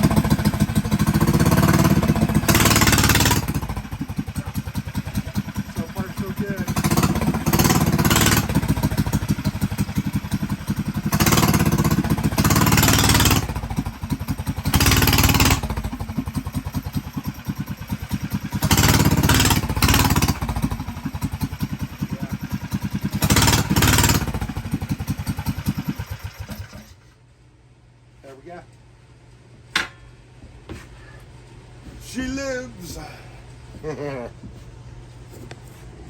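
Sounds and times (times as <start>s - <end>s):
small engine revving: 0.0s - 27.0s.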